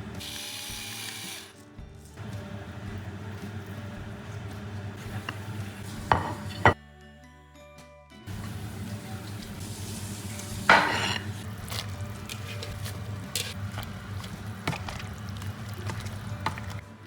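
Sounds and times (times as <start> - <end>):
utensils knocking against pot: 5.0 - 6.8, 10.4 - 16.8
stirring: 8.3 - 17.0.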